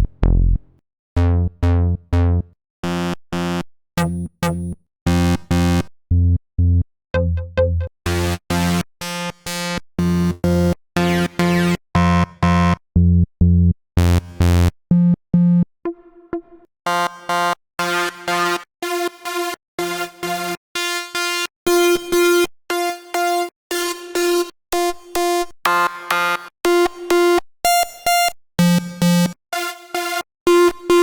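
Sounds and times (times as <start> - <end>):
synthesizer notes: 7.2 - 7.9.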